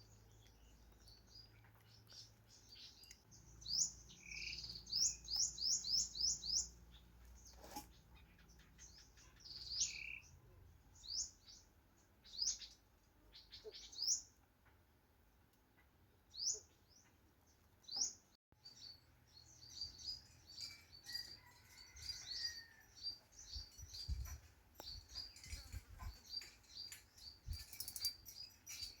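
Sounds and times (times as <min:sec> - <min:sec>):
birds chirping: 0:00.0 - 0:10.4.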